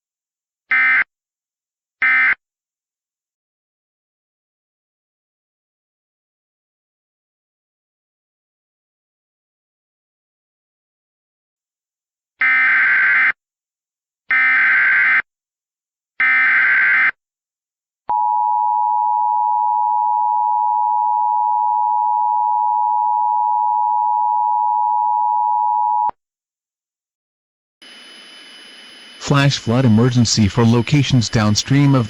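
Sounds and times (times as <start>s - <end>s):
digital data bursts: 27.8s - 32.0s.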